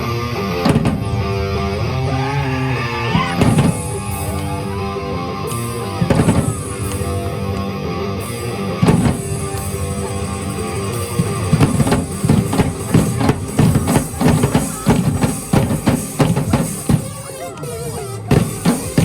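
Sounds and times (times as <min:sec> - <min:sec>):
loud rock music: 0:00.0 - 0:19.0
fast drum hits: 0:00.6 - 0:01.3, 0:03.2 - 0:04.4, 0:05.9 - 0:06.9, 0:08.8 - 0:17.3, 0:18.3 - 0:19.0.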